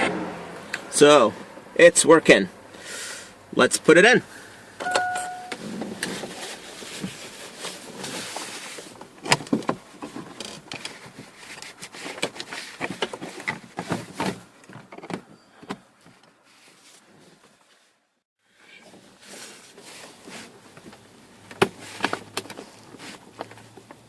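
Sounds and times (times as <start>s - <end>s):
speaker and wiring being handled: 4.8s - 17.8s.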